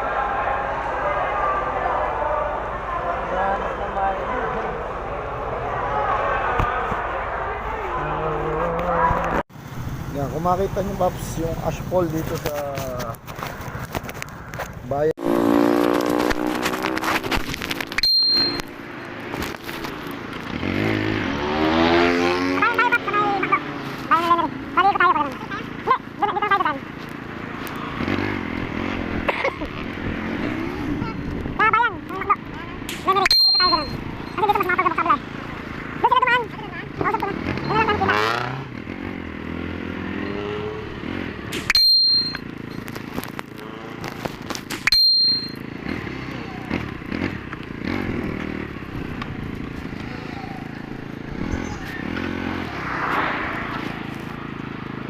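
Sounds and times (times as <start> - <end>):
motorcycle engine running: 7.3 - 55.0
high-pitched beeps: 18.0 - 18.8, 33.2 - 34.5, 41.7 - 42.8, 44.8 - 45.6.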